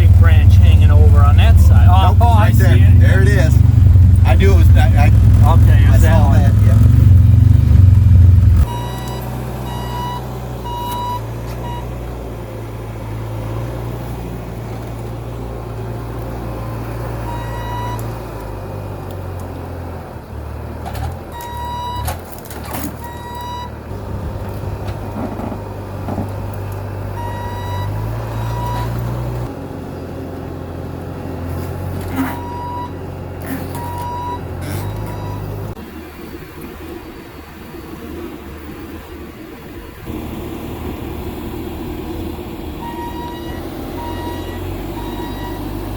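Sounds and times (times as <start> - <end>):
vehicle engine humming: 0.0 - 45.9
electronic warning beeps: 8.6 - 11.9, 17.3 - 18.0, 27.2 - 29.0, 32.2 - 33.0, 33.6 - 35.6, 42.8 - 45.9.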